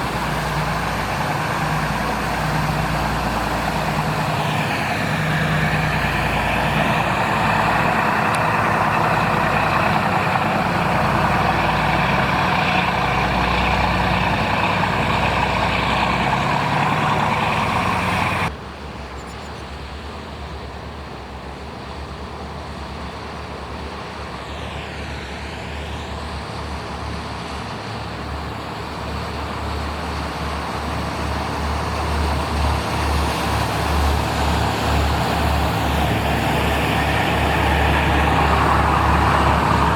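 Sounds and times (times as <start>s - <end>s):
boat engines running: 0.0s - 18.5s, 26.2s - 39.9s
rushing noise: 0.0s - 18.5s, 30.4s - 39.9s.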